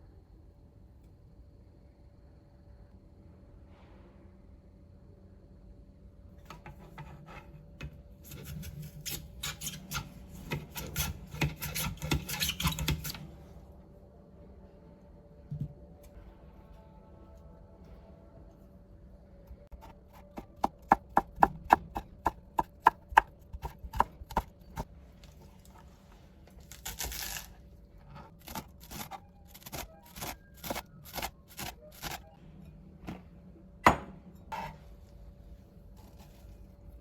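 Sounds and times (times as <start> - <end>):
knife scraping cutting board: 8.2 - 13.2, 34.5 - 34.8.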